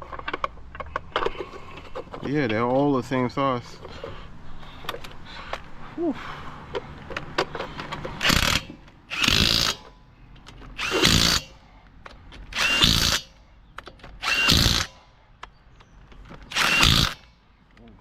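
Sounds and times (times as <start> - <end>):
impact wrench bursts: 7.5 - 10.0, 10.8 - 11.7, 12.5 - 13.4, 14.2 - 15.0, 16.5 - 17.3.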